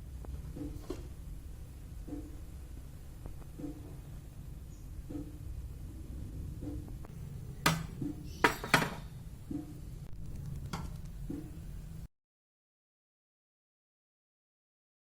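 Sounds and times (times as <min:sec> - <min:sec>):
low steady hum: 0:00.0 - 0:12.1
dishes knocking and clinking: 0:07.6 - 0:09.1.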